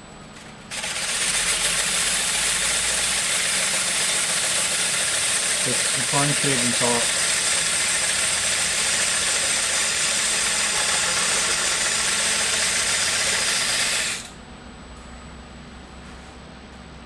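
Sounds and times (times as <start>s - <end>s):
lathe tool scraping wood: 0.7s - 14.3s
lathe motor hum: 0.7s - 14.4s.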